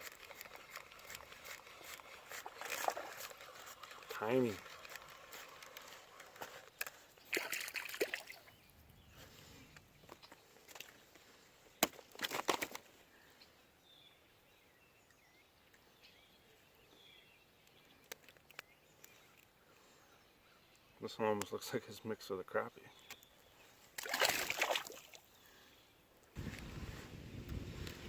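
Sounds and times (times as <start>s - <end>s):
water lapping: 0.7s - 6.6s, 7.2s - 8.6s
water splashing against kayak: 24.0s - 25.2s.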